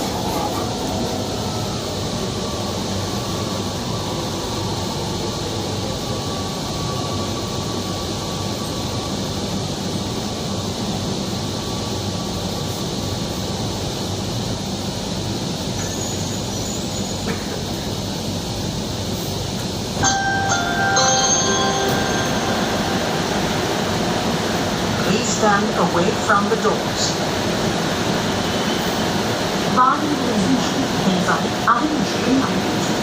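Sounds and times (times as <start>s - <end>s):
train car hum: 0.0s - 33.0s
faint high whine: 20.0s - 25.5s.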